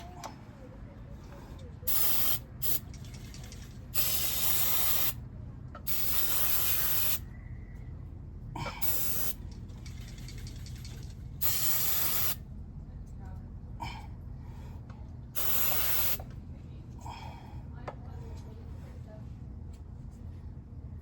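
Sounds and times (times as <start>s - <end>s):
steady low hum: 0.0s - 21.0s
aerosol spray can spraying: 1.9s - 5.2s, 5.9s - 7.2s, 8.8s - 9.4s, 11.4s - 12.4s, 15.4s - 16.2s.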